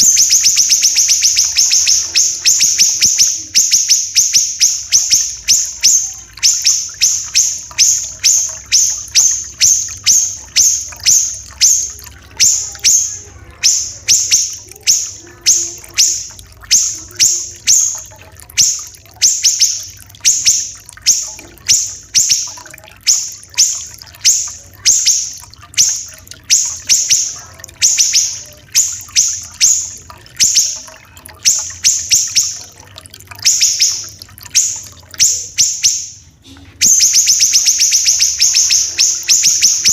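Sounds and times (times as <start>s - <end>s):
faint trickle of running water: 0.0s - 39.9s
songbird singing high notes: 0.0s - 39.9s.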